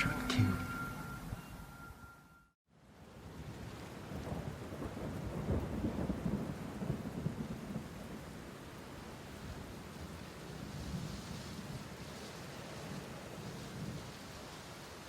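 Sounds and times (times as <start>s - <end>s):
steady hiss: 8.6s - 15.0s.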